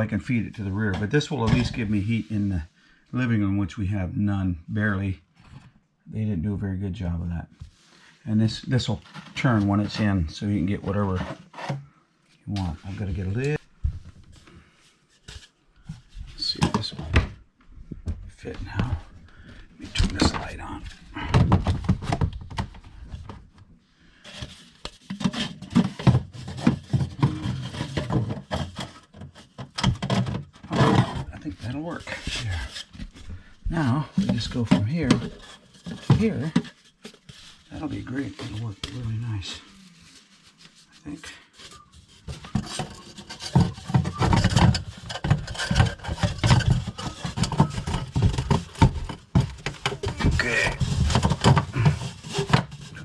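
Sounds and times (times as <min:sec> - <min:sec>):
plastic part rubbing and scraping: 0:09.0 - 0:11.9, 0:18.4 - 0:23.4, 0:24.2 - 0:53.0.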